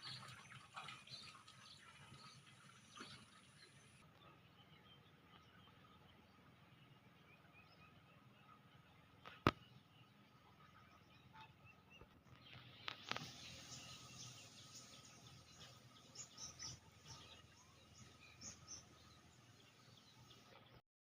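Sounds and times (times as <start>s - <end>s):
faint rural ambience: 0.0s - 20.8s.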